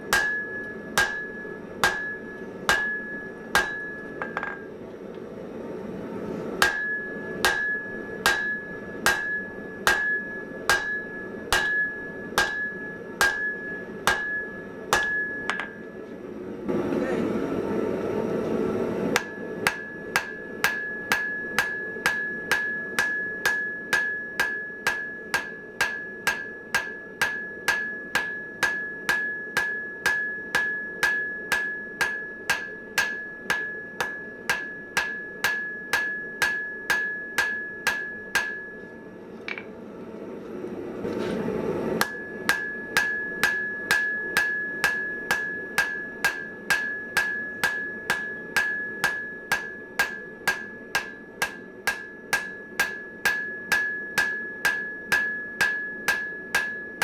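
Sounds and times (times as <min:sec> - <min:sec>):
hammer striking steel on anvil: 0:00.0 - 0:04.8, 0:06.6 - 0:16.0, 0:19.2 - 0:39.7, 0:42.0 - 0:57.0.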